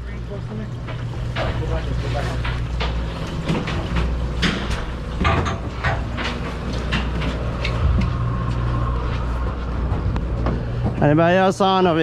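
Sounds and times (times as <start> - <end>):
boat engine idling: 0.0 - 11.6
sharp clicks and knocks: 0.8 - 8.2.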